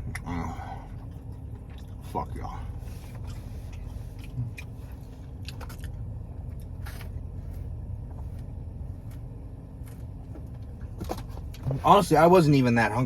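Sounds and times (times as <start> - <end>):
low rumble inside car: 0.0 - 13.0
chewing with wet mouth clicks: 1.3 - 2.1, 3.1 - 7.2.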